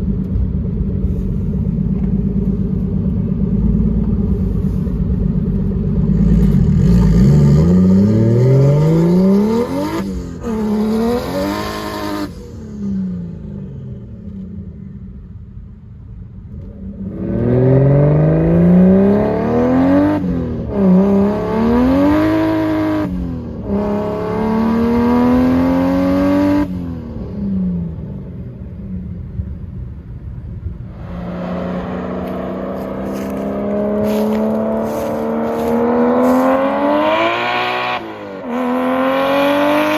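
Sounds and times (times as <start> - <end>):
car engine accelerating through gears: 0.2 - 14.5, 16.5 - 28.0, 30.8 - 39.9.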